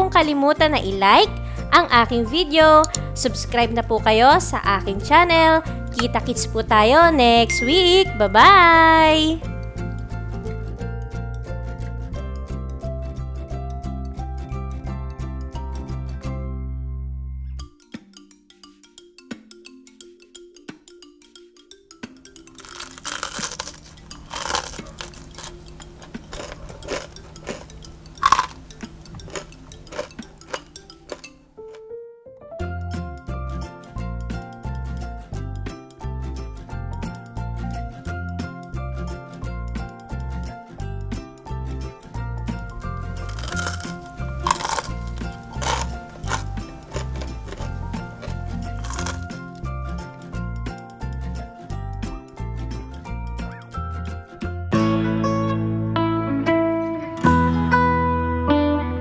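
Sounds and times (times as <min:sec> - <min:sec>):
background music with steady beat: 0:00.0 - 0:16.7, 0:32.5 - 0:58.8
mallet percussion music: 0:00.9 - 0:12.5, 0:17.6 - 0:23.3
chewing: 0:02.8 - 0:03.1, 0:05.8 - 0:06.4, 0:22.5 - 0:31.8, 0:42.6 - 0:49.7
crunching bites into fries: 0:22.6 - 0:31.8, 0:42.8 - 0:49.7.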